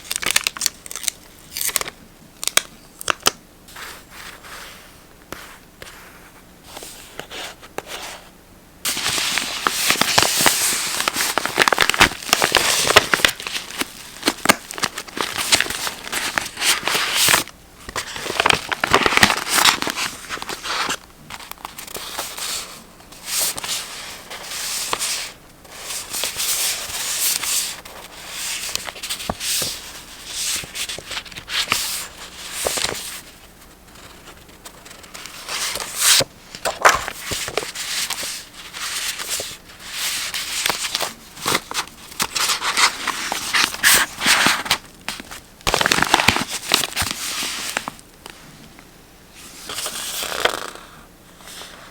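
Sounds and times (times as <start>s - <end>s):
paper rustling and crinkling: 8.9s - 48.5s, 49.4s - 50.8s.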